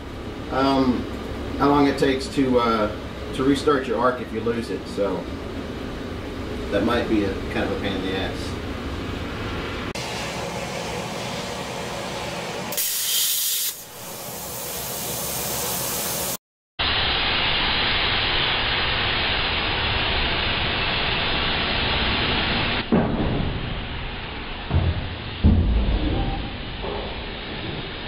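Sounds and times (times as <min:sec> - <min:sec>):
plasma cutter torch hissing: 0:12.7 - 0:22.8.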